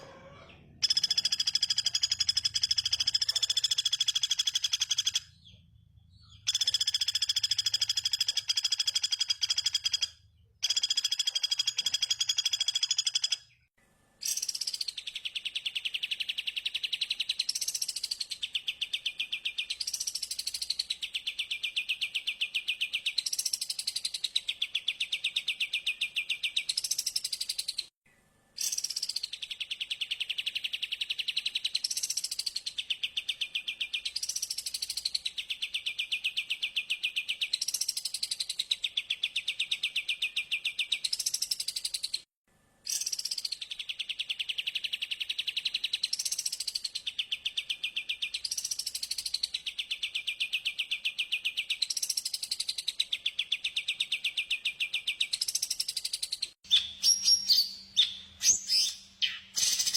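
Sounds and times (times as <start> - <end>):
songbird chattering trill: 53.2 - 59.9.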